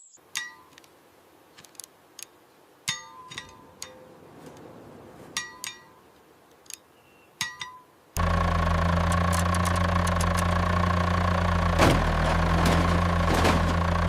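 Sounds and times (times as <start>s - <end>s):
metal tools clinking on metal: 2.9s - 4.1s.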